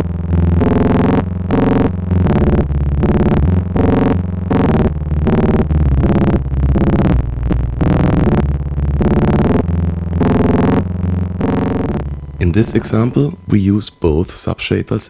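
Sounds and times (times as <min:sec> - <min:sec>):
gated synthesizer notes: 0:12.0 - 0:15.0.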